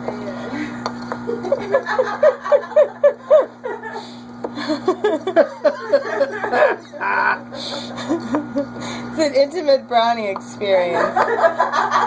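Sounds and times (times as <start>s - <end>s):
person laughing: 0.6s - 8.9s.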